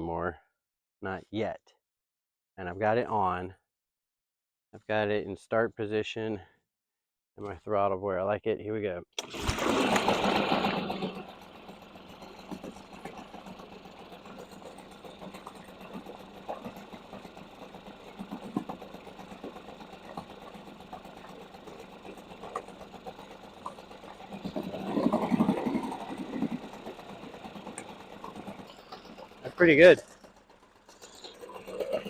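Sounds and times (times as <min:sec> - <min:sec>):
outboard motor starting and idling: 0:09.2 - 0:32.0.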